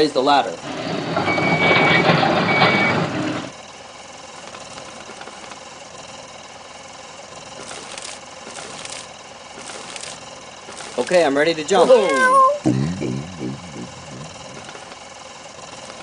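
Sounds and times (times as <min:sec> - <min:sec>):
short beep: 0:01.2 - 0:03.0
toy electric motor whirring: 0:04.3 - 0:05.7, 0:07.4 - 0:12.6, 0:13.9 - 0:16.0.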